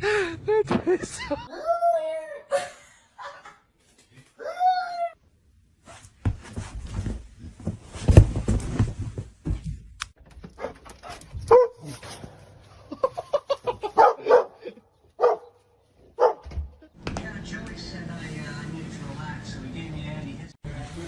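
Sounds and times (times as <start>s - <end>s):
dog barking: 11.5s - 11.9s, 14.0s - 16.5s.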